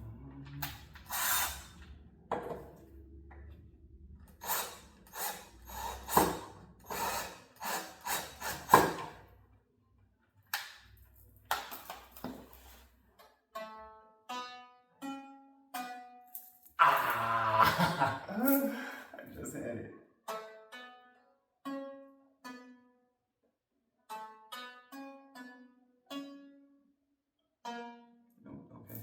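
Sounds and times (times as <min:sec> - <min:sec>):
plucked string notes: 0:00.0 - 0:04.4, 0:13.1 - 0:18.5, 0:20.2 - 0:23.1, 0:24.0 - 0:27.0, 0:27.6 - 0:29.0
scraping and rubbing on string instrument: 0:00.0 - 0:09.3, 0:12.0 - 0:16.2.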